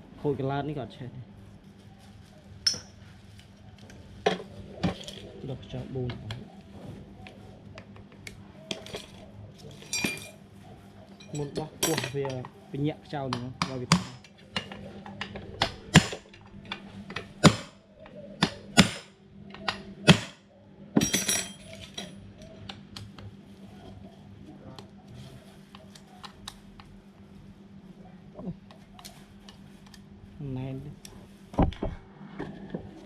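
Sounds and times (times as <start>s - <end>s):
metal tools clinking and knocking: 2.7s - 3.0s, 8.7s - 10.4s, 11.1s - 12.6s, 21.0s - 22.7s.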